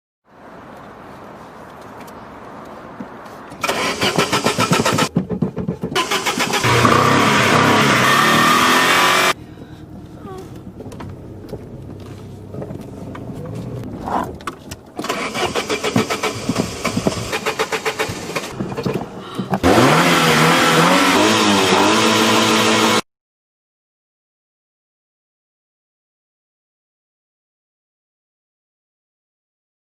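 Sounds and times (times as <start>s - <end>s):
car starter cranking engine: 3.6s - 5.1s, 5.8s - 9.4s, 15.0s - 23.0s.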